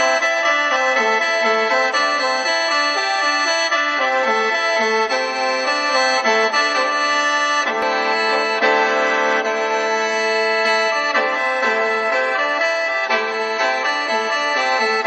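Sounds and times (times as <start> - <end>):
free-reed mouth organ melody: 7.7 - 14.9.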